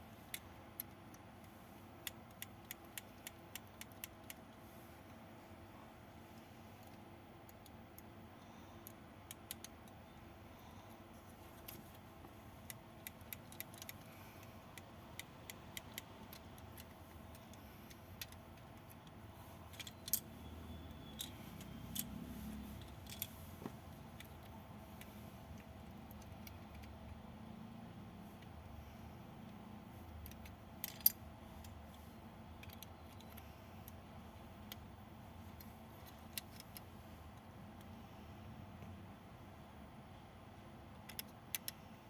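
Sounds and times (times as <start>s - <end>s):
plastic pieces clicking and rattling: 12.6s - 14.1s, 18.2s - 20.3s, 30.2s - 31.2s, 32.6s - 34.0s.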